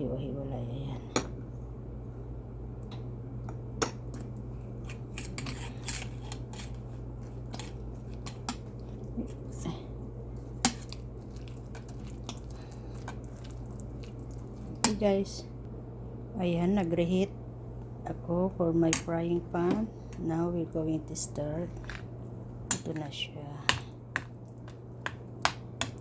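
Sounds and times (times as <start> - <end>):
steady low hum: 0.0 - 26.0
spoon scraping in a bowl: 4.8 - 8.9.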